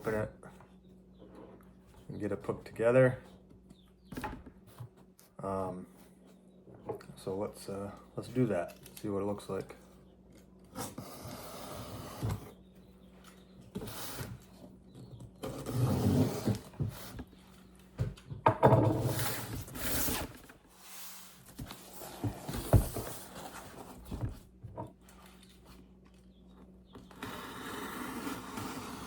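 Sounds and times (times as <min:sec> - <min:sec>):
cardboard box scraping and rustling: 0:10.8 - 0:12.6, 0:15.4 - 0:17.3, 0:18.9 - 0:24.4, 0:27.1 - 0:29.0.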